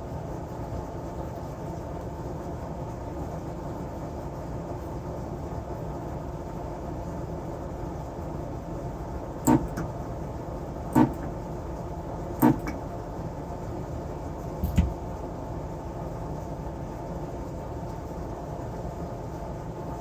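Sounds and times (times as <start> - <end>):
steady hum: 9.2 - 15.5.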